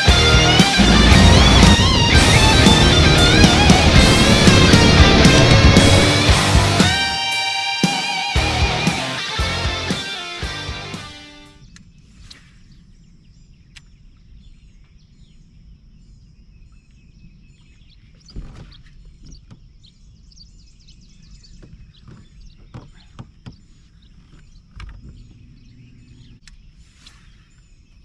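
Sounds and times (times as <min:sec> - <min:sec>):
low rumble: 0:00.0 - 0:07.1
steady high drone: 0:00.0 - 0:11.6.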